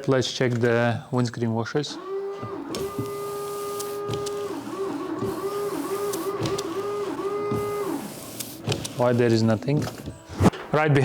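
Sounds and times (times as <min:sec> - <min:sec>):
small electric motor whining: 0:01.9 - 0:10.5.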